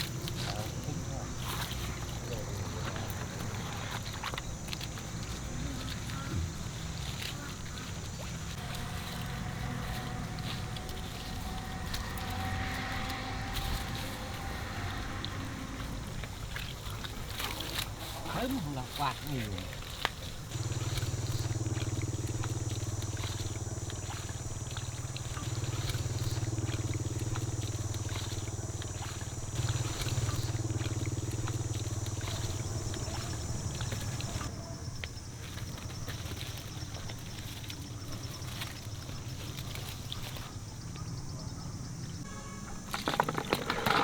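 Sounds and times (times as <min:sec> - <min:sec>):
small motor humming: 0:01.6 - 0:17.9, 0:19.8 - 0:34.5
high buzz: 0:08.4 - 0:16.7.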